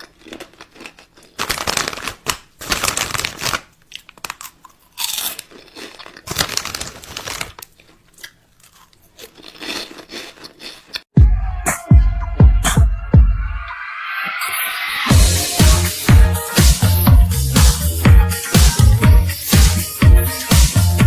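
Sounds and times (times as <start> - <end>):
crinkly material tearing and crunching: 0.0 - 11.0.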